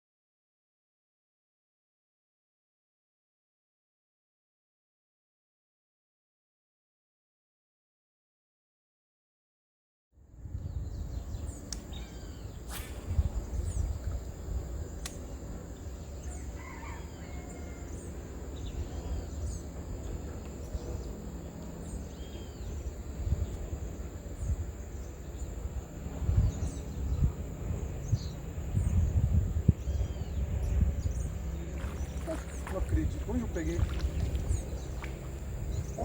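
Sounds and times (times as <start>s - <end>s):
insect drone: 10.6s - 36.0s.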